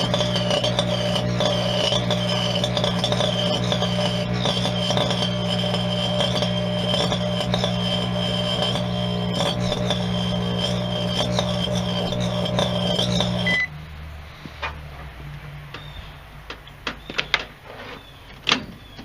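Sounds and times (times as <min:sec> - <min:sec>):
electrical arcing crackle: 0:00.0 - 0:13.7
high whine: 0:00.0 - 0:16.2
microwave transformer hum: 0:00.0 - 0:19.0
short beep: 0:13.4 - 0:13.8.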